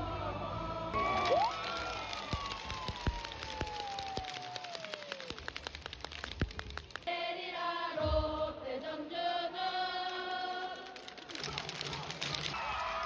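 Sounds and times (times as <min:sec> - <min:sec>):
clapping: 0:01.0 - 0:07.1, 0:10.6 - 0:13.0
crowd chanting in unison: 0:07.1 - 0:10.8.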